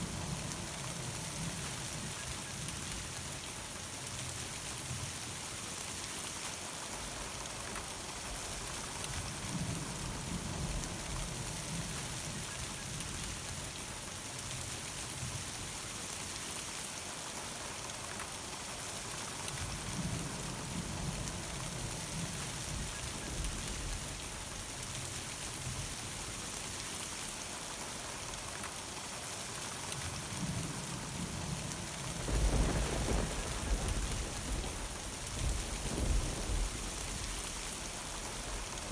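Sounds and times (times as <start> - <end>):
rain hissing down: 0.0 - 38.9
thunder rumbling: 31.1 - 38.9.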